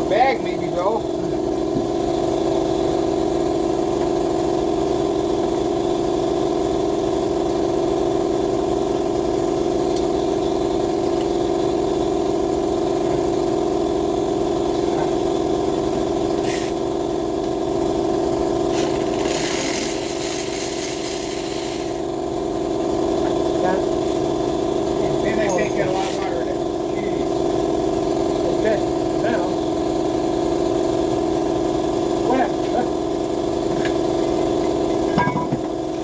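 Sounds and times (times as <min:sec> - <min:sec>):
motor humming: 0:14.6 - 0:36.0
hiss: 0:16.4 - 0:16.8, 0:18.8 - 0:22.1.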